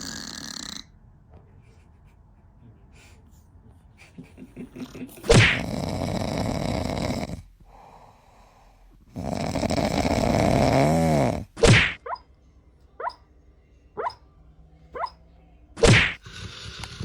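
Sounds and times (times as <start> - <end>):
pet snoring: 0.0 - 0.9, 5.3 - 7.8, 9.1 - 12.0, 15.8 - 17.0.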